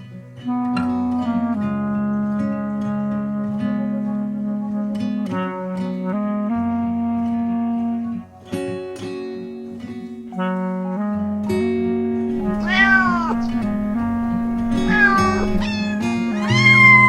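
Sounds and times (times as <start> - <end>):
cat meowing: 12.3 - 17.0
plucked guitar music with bass: 12.3 - 17.0.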